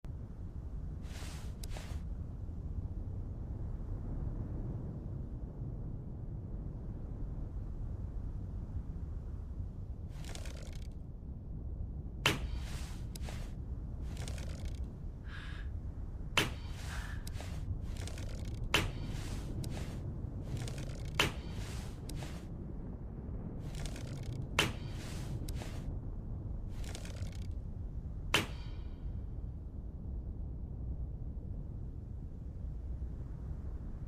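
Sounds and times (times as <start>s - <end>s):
steady low hum: 7.3s - 34.0s
soft clicks and rustles: 10.1s - 11.0s, 12.3s - 14.9s, 16.4s - 22.5s, 23.6s - 25.9s, 26.7s - 27.6s
bow string snapping: 12.2s - 13.5s, 16.4s - 22.4s, 28.4s - 28.7s.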